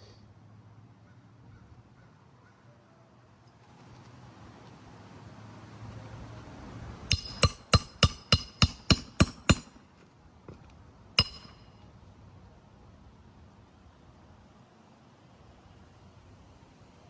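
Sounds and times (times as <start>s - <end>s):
hammer striking roof: 7.1s - 9.8s.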